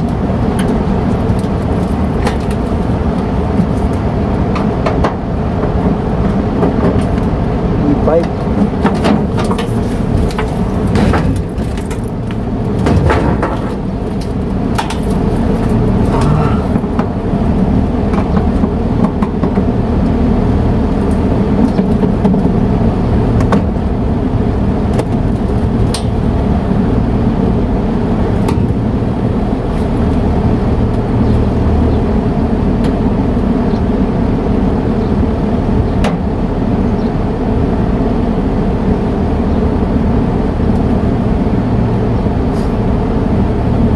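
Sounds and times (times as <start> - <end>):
air conditioner units humming: 0.0 - 43.9
sharp clicks and knocks: 8.2 - 17.2.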